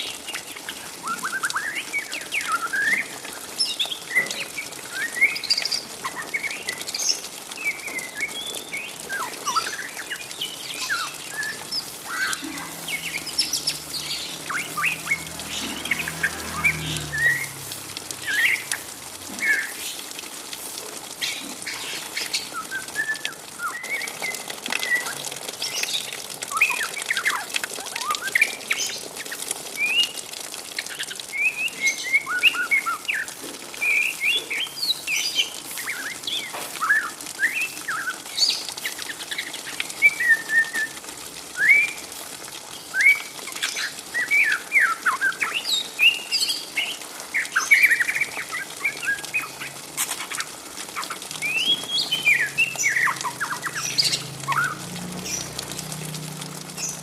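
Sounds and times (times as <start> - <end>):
bird twittering: 10.7 - 17.5.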